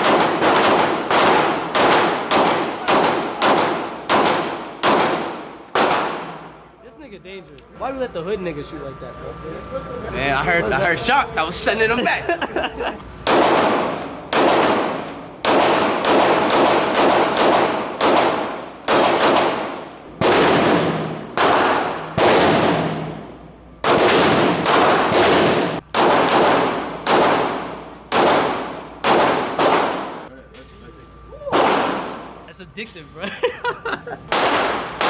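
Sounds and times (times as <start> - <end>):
gunshots with echo: 0.0 - 6.6, 13.3 - 30.3, 31.5 - 32.1, 34.3 - 35.0.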